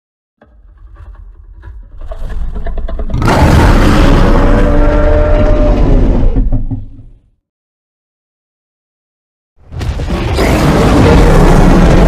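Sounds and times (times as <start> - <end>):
deep rumbling roar: 1.6 - 7.2, 10.2 - 12.0.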